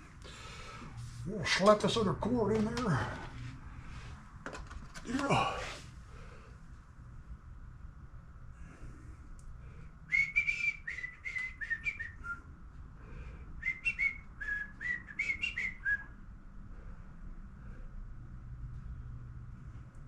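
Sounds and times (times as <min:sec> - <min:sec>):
person whistling: 0:10.1 - 0:12.5, 0:13.6 - 0:16.1.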